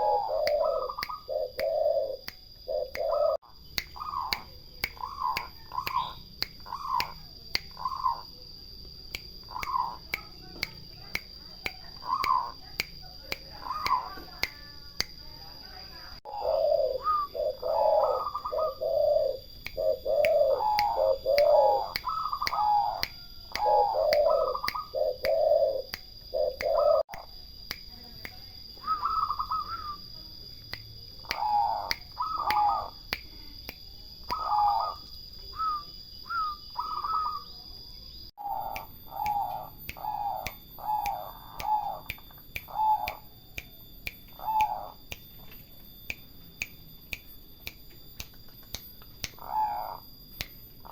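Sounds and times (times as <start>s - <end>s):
doves cooing: 0.0s - 3.4s, 16.3s - 23.0s, 23.6s - 27.0s, 28.8s - 30.0s, 34.3s - 37.5s
regular ticking: 0.4s - 15.4s, 38.7s - 49.5s.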